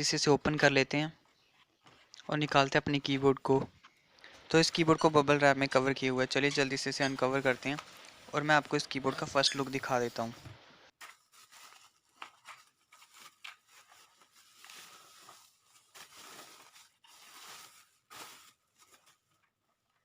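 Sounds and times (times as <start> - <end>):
bubble wrap crinkling: 10.9 - 20.0.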